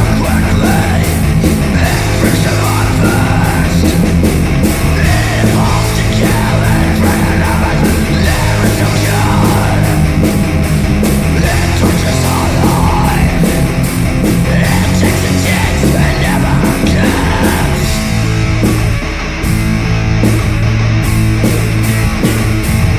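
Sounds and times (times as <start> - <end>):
shouted vocals: 0.0 - 4.2, 4.8 - 10.5, 11.3 - 18.0
distorted guitar: 0.0 - 22.9
punk rock music: 0.0 - 22.9.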